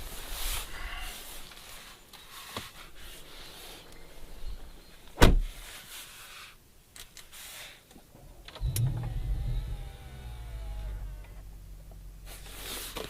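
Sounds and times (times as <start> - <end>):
car engine starting and idling: 8.1 - 13.0.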